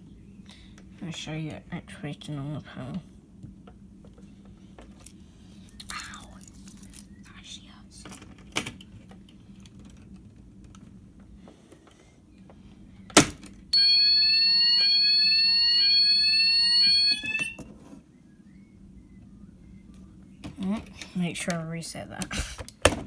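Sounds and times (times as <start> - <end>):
fire alarm sounders: 13.7 - 17.6.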